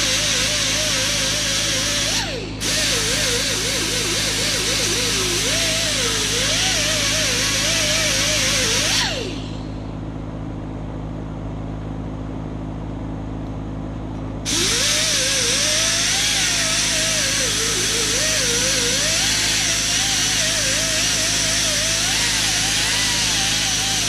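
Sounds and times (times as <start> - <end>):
grinder grinding metal: 0.0 - 9.7, 14.5 - 24.0.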